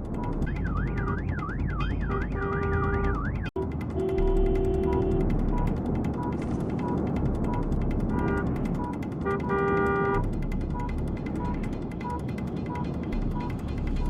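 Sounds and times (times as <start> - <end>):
car horn honking: 2.0 - 5.2, 9.2 - 10.2.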